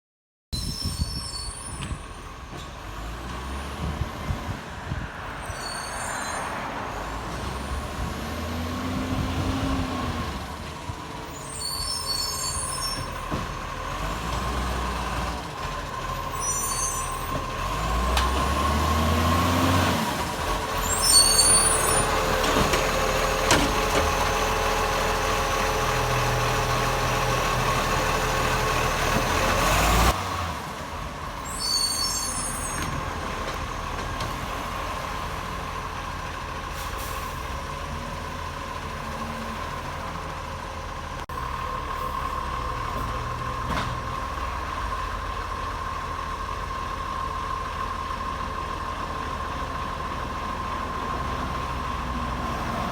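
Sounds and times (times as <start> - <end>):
garbage truck engine revving: 6.9 - 11.6, 13.0 - 16.4, 17.0 - 31.5.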